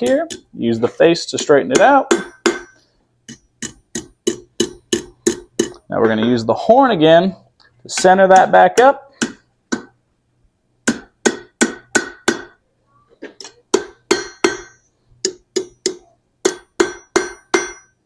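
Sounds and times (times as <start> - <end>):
hammer striking steel on anvil: 1.3 - 6.6, 10.8 - 12.6, 13.4 - 18.0.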